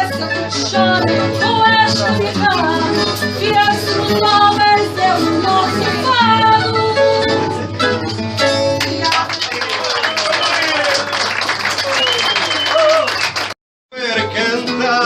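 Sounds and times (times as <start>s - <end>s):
person singing: 0.0s - 7.8s, 13.9s - 15.0s
plucked guitar: 0.0s - 9.3s.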